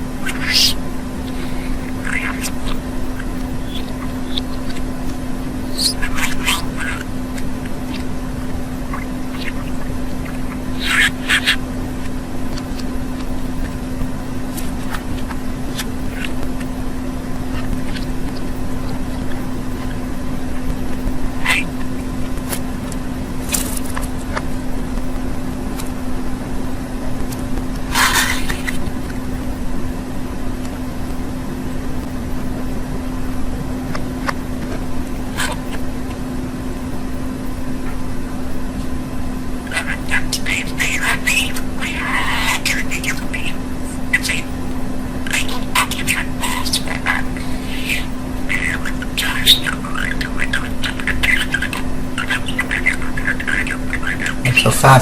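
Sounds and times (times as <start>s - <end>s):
budgerigar chirping: 0.0s - 13.8s, 14.6s - 22.1s, 28.0s - 28.8s, 39.7s - 44.6s, 45.3s - 55.0s
background hum and hiss: 0.0s - 55.0s.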